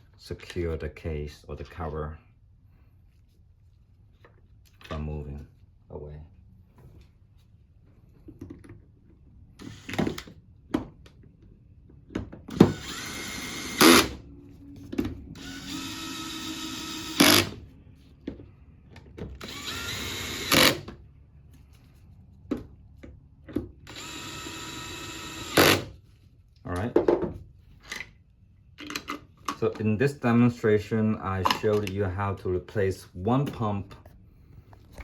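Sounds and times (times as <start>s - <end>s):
power drill whirring: 9.6s - 10.3s, 12.5s - 14.2s, 15.4s - 17.6s, 19.4s - 20.9s, 23.8s - 25.9s.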